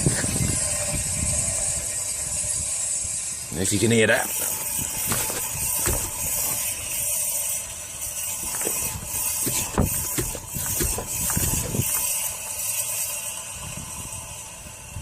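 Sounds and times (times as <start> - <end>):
clicks and clunks: 4.4 - 6.6.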